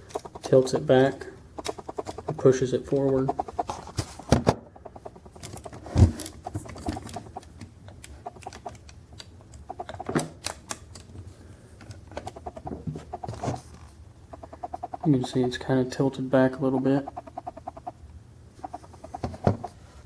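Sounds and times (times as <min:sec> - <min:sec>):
model parts clicking and tapping: 0:00.0 - 0:04.1, 0:04.8 - 0:11.1, 0:11.8 - 0:13.6.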